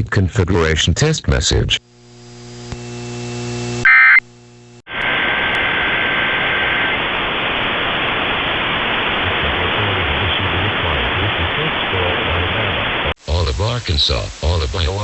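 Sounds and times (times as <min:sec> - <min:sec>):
radio static hiss: 0:01.3 - 0:15.0
low electrical hum: 0:01.5 - 0:04.8
digital data tones: 0:03.8 - 0:04.2.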